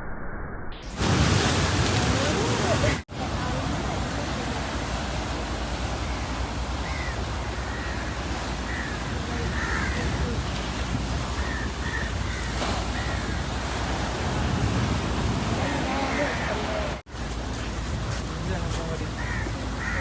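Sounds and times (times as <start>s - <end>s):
sea surf washing: 0.9s - 20.0s
bird calls: 5.9s - 10.3s, 11.3s - 13.6s.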